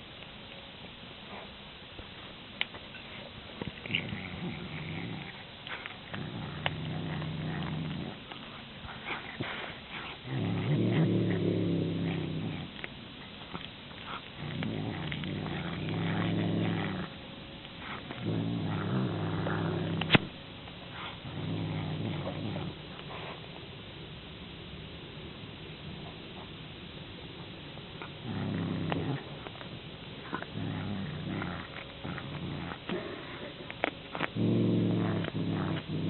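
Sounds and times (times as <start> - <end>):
cat growling: 3.7 - 12.9, 13.5 - 20.4, 21.0 - 22.8, 28.0 - 36.0.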